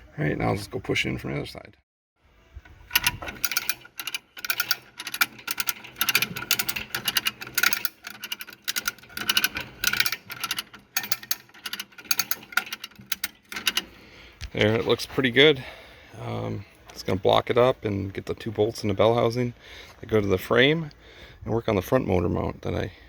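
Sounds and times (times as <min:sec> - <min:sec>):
hand winch ratchet clicking: 0:02.6 - 0:14.6.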